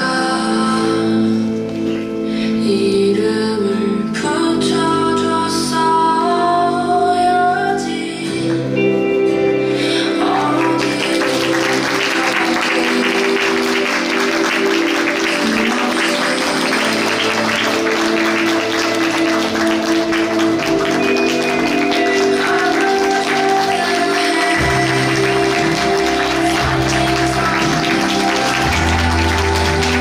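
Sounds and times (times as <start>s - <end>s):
music with held tones: 0.0s - 30.0s
audience applauding: 10.0s - 30.0s.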